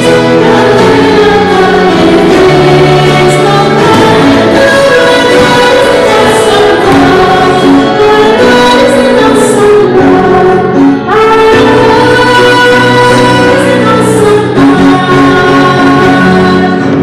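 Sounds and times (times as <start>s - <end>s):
choir singing: 0.0s - 17.0s.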